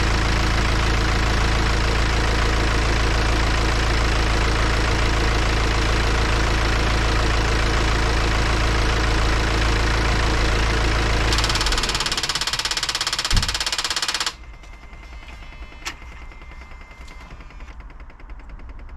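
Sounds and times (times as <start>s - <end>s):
diesel engine idling: 0.0s - 14.4s
fast metallic rattle: 11.3s - 14.5s.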